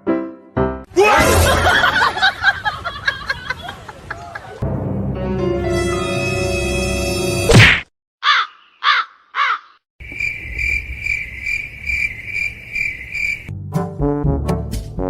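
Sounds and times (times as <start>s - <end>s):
music: 0.0s - 0.9s, 4.6s - 7.5s, 13.5s - 15.0s
brass music: 4.6s - 7.5s, 13.5s - 15.0s
steady chirping: 10.0s - 13.5s.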